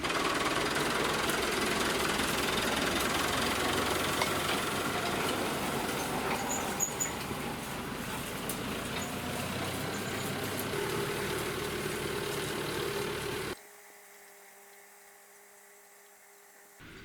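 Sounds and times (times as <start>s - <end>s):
engine running: 0.0s - 13.6s.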